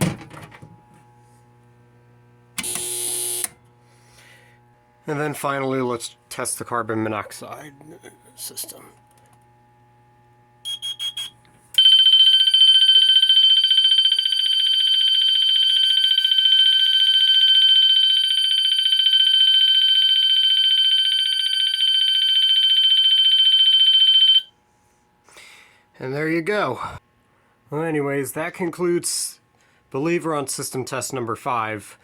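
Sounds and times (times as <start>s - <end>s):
carbon monoxide alarm beeping: 2.6s - 3.6s, 10.6s - 24.6s
continuous high-pitched alarm tone: 10.6s - 24.5s.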